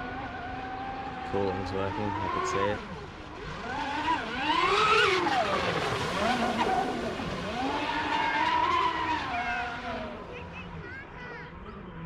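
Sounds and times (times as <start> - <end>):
electric motor and propeller whining: 1.4 - 10.3.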